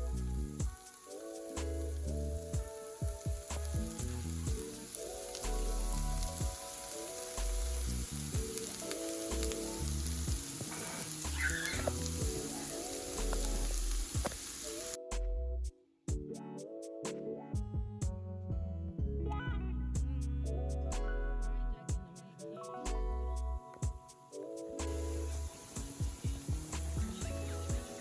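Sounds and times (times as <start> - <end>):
background music with bass line: 0.0 - 28.0
vegetables sizzling in oil: 0.7 - 2.1, 3.4 - 15.0, 24.9 - 28.0.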